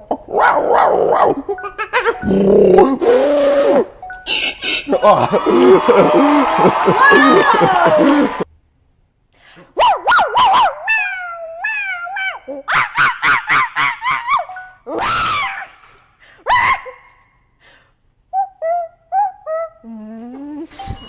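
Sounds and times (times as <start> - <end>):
dog-like yelping and whining: 9.8 - 15.8.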